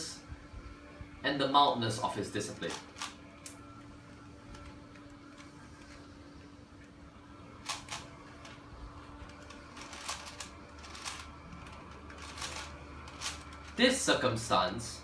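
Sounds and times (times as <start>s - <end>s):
faint steady hum: 0.0s - 15.0s
plastic puzzle clicking: 9.2s - 13.8s.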